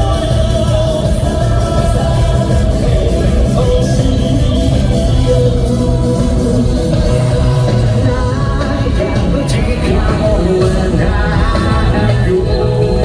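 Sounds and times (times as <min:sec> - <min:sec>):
live rock band playing: 0:00.0 - 0:13.0
sung lead vocal: 0:00.0 - 0:13.0.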